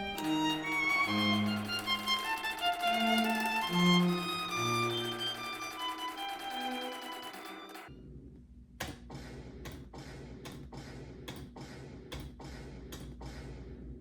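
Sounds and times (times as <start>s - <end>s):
violin music: 0.0s - 7.9s
computer mouse clicks: 9.6s - 11.5s.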